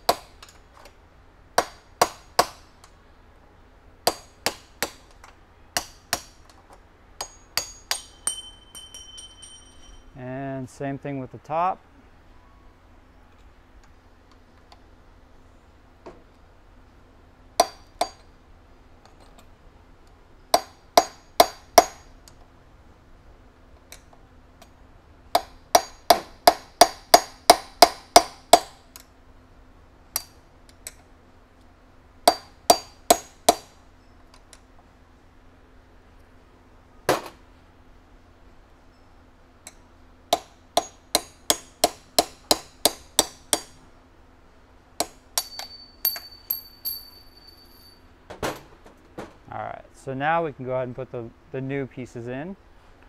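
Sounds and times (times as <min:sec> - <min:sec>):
hammer striking metal: 0:07.2 - 0:10.1, 0:40.3 - 0:43.8, 0:45.0 - 0:48.0.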